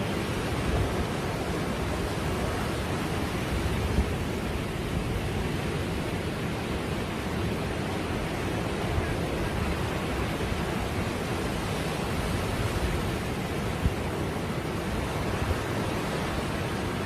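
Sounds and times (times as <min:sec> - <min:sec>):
steady rushing noise: 0:00.0 - 0:17.0.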